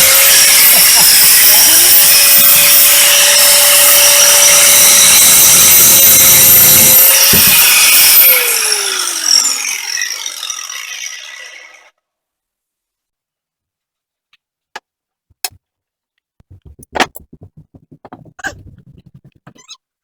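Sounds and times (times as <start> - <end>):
angle grinder whining: 0.0 - 11.9.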